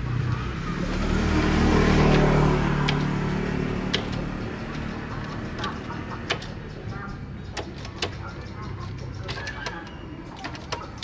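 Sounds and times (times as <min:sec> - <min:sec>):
vehicle engine passing by: 0:00.0 - 0:07.5.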